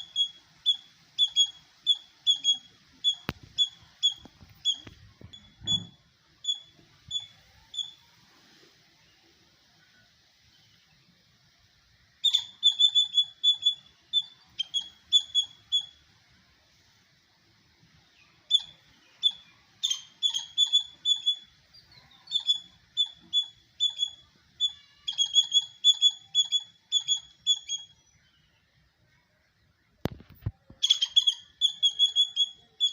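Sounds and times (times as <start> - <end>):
squirrel chirping: 0.0 - 8.0, 12.2 - 16.0, 18.5 - 28.1, 30.8 - 32.9.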